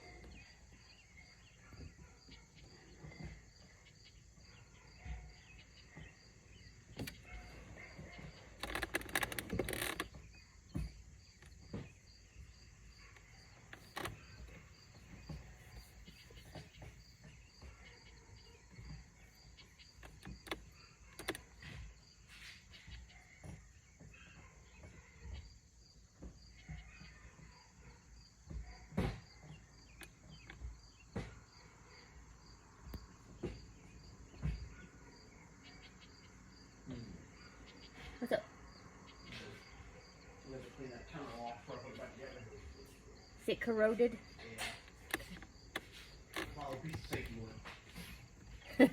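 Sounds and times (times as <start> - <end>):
crickets chirping: 0.0 - 48.9
hand tools clicking and knocking: 20.0 - 21.7, 44.4 - 48.9.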